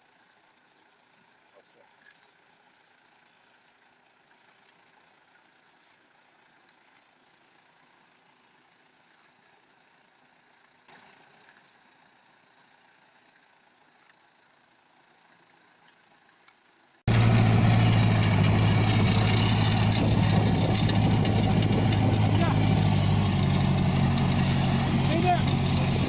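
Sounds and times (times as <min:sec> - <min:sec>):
harvester machinery working: 0:17.1 - 0:26.0
tractor engine running: 0:17.1 - 0:26.0.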